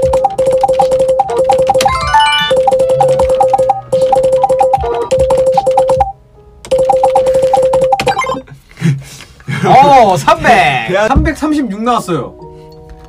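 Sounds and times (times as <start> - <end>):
bouncy synthesizer music: 0.0 - 8.6.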